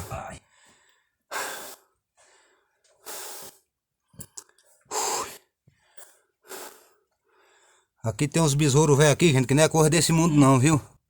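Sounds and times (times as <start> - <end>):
man breathing hard: 0.0 - 3.6, 4.9 - 7.9.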